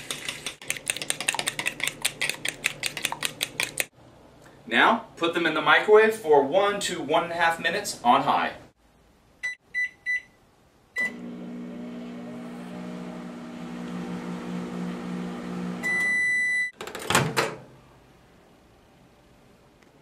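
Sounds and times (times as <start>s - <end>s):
microwave keypad beep: 9.4s - 10.3s, 15.8s - 16.8s
long microwave beep: 9.4s - 10.4s, 11.0s - 11.2s, 15.8s - 16.8s
microwave humming: 11.0s - 16.6s.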